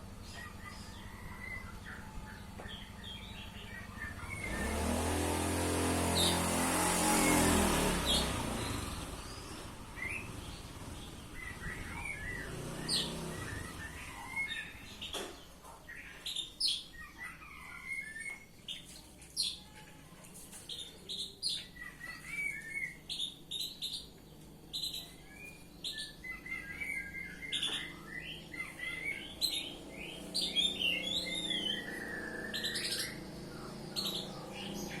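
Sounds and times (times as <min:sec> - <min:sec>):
passing engine: 0:00.0 - 0:15.0, 0:26.2 - 0:35.0
bird singing whistles and chirps: 0:24.7 - 0:35.0.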